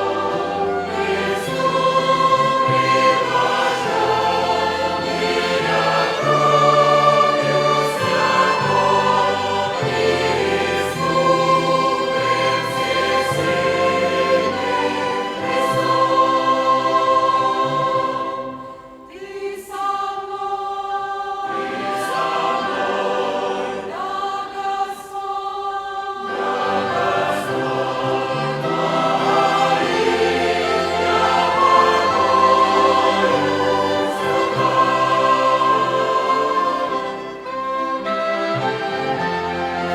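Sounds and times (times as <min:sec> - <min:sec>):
church choir singing a hymn: 0:00.0 - 0:39.9
violin ensemble: 0:00.0 - 0:39.9.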